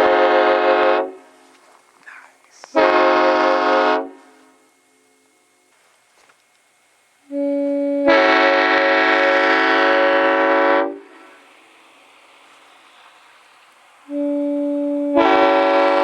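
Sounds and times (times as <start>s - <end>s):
five-chime train horn: 0.0s - 1.3s, 2.8s - 4.4s, 7.3s - 11.3s, 14.1s - 16.0s.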